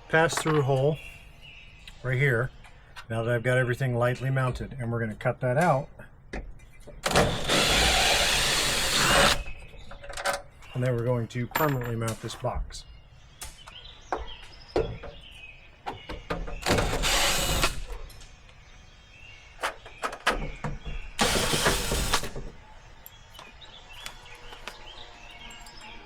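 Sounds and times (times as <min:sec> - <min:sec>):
power driver driving screws: 0:07.0 - 0:09.6, 0:16.6 - 0:18.0, 0:21.2 - 0:22.4.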